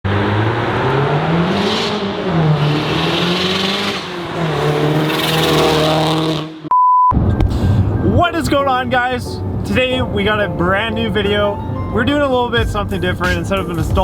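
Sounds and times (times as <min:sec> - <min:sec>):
car engine revving: 0:00.0 - 0:06.7.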